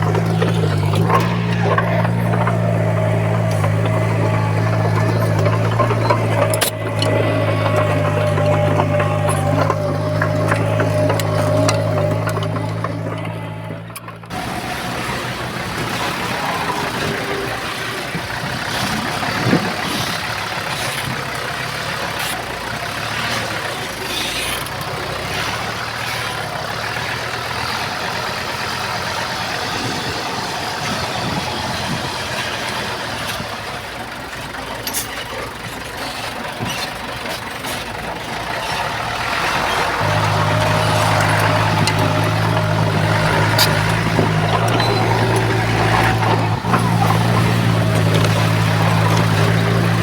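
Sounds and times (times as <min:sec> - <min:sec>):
metal clanks: 0:00.0 - 0:17.3, 0:34.7 - 0:50.0
diesel machinery running: 0:00.0 - 0:50.0.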